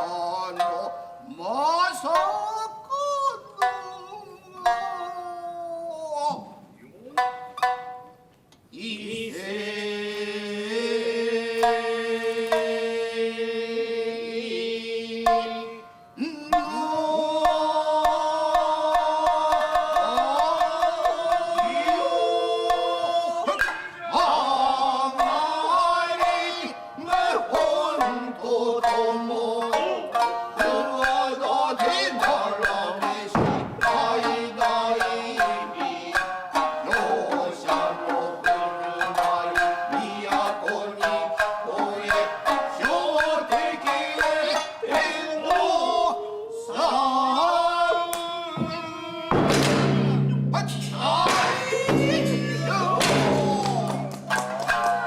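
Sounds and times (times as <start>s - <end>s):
shamisen plucking: 0.0s - 5.6s, 7.0s - 8.4s, 11.6s - 13.2s, 15.3s - 46.4s, 49.3s - 55.0s
chanted vowels bending in pitch: 2.2s - 8.2s, 50.0s - 55.0s
heavy thump: 33.4s - 34.0s, 48.6s - 54.1s.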